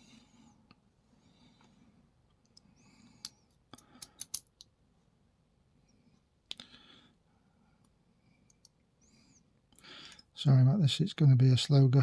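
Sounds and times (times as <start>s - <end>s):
small metallic clicks and taps: 2.4s - 4.7s.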